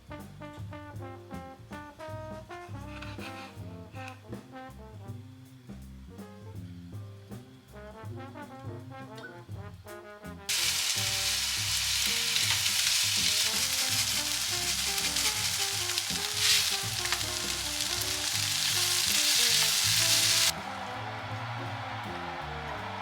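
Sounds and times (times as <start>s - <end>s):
food sizzling in a frying pan: 10.5s - 20.5s.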